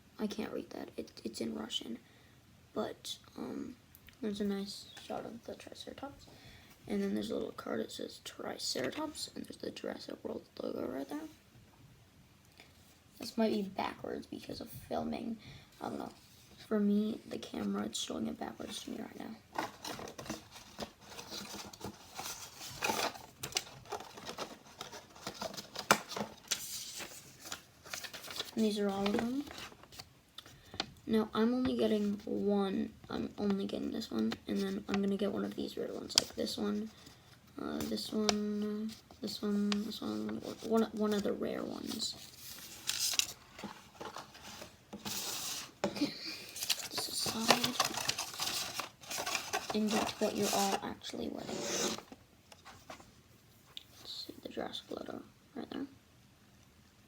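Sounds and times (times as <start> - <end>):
plastic packaging rustling: 18.6 - 30.9, 37.9 - 53.2.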